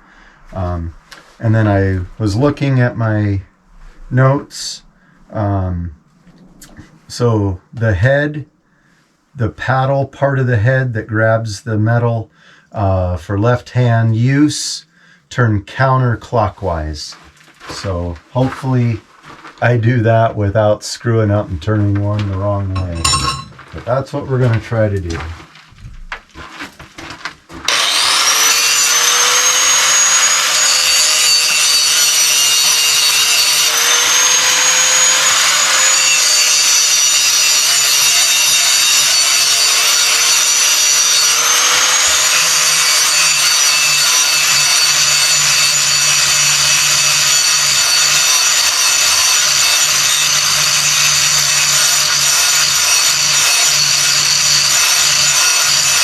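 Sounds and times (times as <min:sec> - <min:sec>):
grinder whining on steel: 0:22.8 - 0:23.7, 0:27.5 - 0:56.0.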